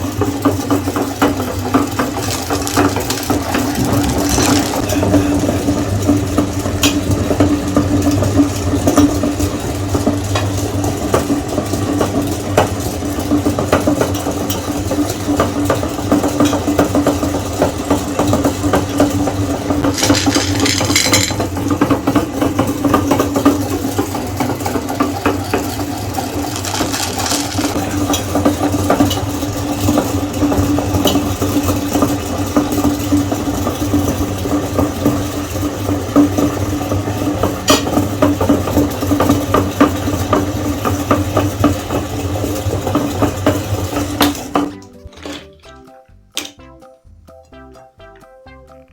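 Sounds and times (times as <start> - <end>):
meat grinder crunching candies: 0.0 - 45.6
candy shells cracking: 1.8 - 5.0, 19.8 - 21.4, 25.5 - 27.9.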